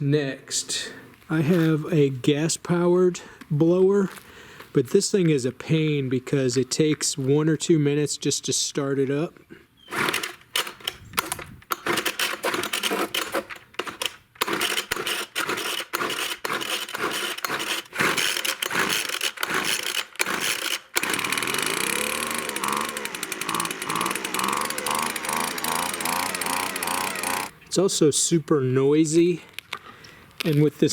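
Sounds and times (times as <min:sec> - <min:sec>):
recoil starter cord yanks: 0:09.8 - 0:27.6
leaf blower engine running: 0:16.0 - 0:27.6.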